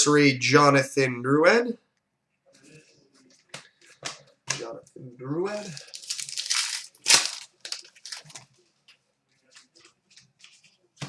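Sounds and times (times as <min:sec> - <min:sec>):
cards rustling: 0:05.5 - 0:08.6.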